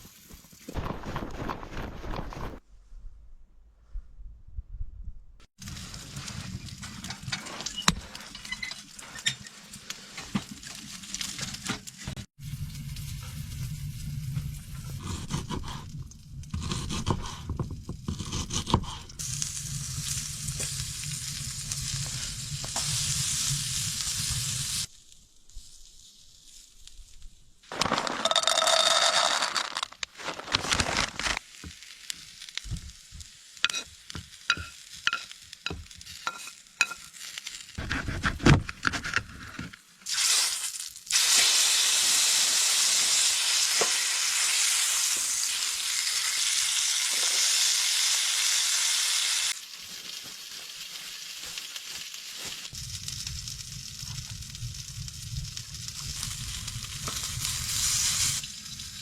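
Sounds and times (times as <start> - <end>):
food sizzling in a pan: 19.2 - 25.0, 31.4 - 37.8, 40.0 - 59.0.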